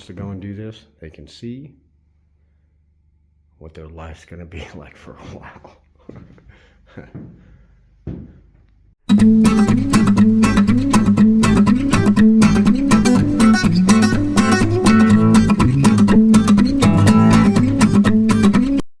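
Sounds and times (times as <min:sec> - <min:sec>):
strummed guitar chords: 0:09.1 - 0:18.8.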